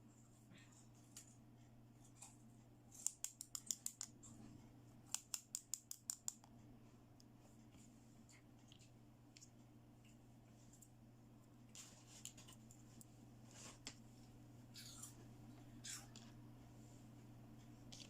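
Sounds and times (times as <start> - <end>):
small sharp clicks: 3.0 - 4.2.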